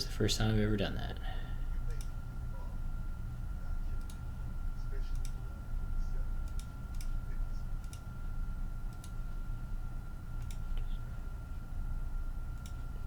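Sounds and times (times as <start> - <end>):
faint high whine: 0.0 - 13.0
low hum: 0.0 - 13.0
sharp computer clicks: 1.9 - 2.2, 4.0 - 4.3, 5.1 - 5.4, 6.4 - 7.2, 7.8 - 8.1, 8.9 - 9.2, 10.4 - 10.9, 12.6 - 12.9.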